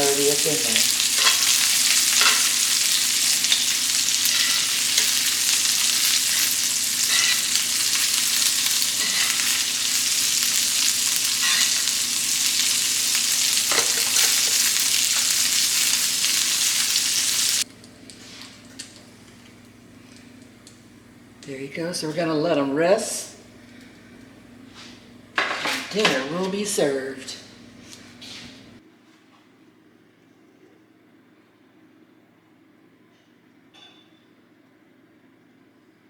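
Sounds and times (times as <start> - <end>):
steak sizzling in a pan: 0.0 - 19.1.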